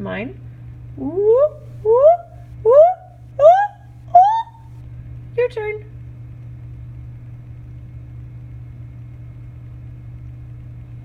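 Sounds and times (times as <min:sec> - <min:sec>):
low background hum: 0:00.0 - 0:11.0.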